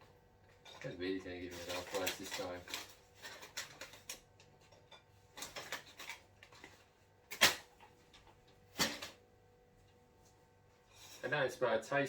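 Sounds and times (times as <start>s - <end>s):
paper packaging crinkling: 0.8s - 7.9s.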